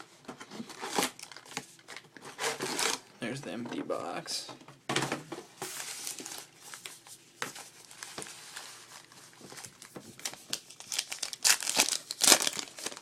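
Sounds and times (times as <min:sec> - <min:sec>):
card pack wrappers crinkling: 0:00.7 - 0:03.0, 0:07.6 - 0:13.0.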